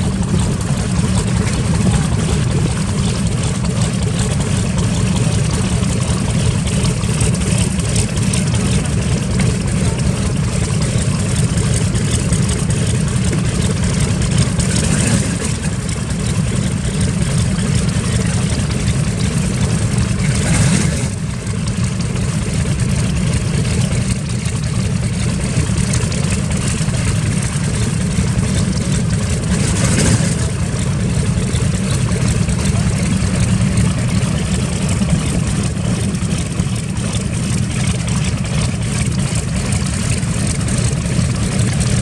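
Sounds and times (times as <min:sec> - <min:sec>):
rush of noise: 0:00.0 - 0:07.2
piston aircraft engine rumbling: 0:00.0 - 0:42.0.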